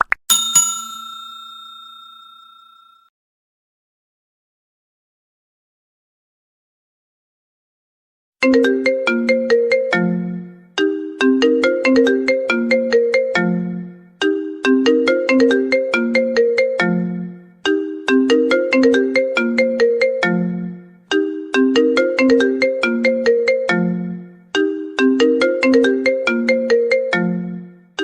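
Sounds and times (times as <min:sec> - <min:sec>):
phone ringtone melody: 0:00.3 - 0:03.0.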